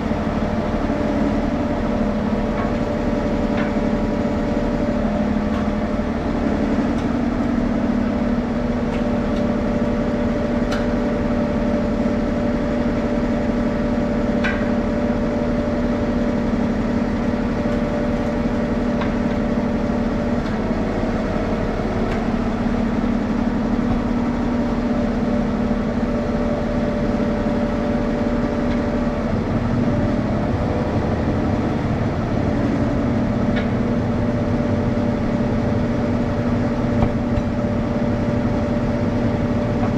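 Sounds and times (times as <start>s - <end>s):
engine running steadily: 0.0s - 39.9s.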